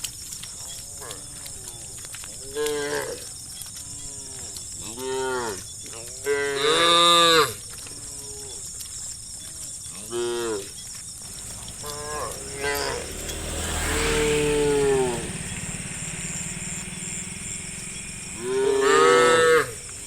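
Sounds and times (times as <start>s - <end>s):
cattle mooing: 11.3s - 20.0s.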